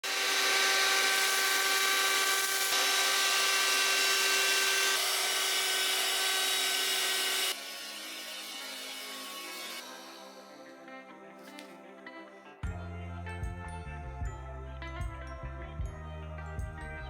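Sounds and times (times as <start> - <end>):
hand-held vacuum cleaner whining: 0.0 - 10.7
quiet music: 8.0 - 17.0.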